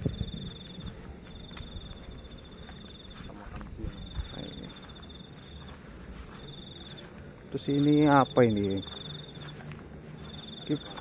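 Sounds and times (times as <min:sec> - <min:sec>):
cricket trilling: 0:00.0 - 0:11.0
high-pitched insect drone: 0:00.0 - 0:11.0.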